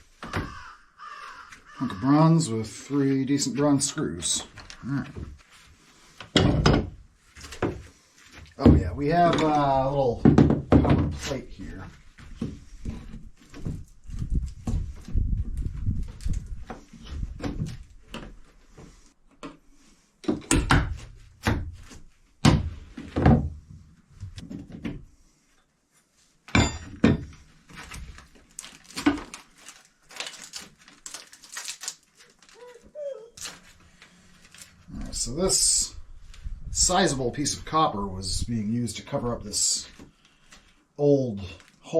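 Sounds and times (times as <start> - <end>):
hand tools knocking and thudding: 6.3 - 7.0, 8.6 - 11.2, 20.2 - 21.7, 26.5 - 27.4
demolition knocks and thumps on wood: 6.3 - 7.9, 8.6 - 11.3, 12.2 - 18.4, 20.2 - 25.0, 26.5 - 27.5.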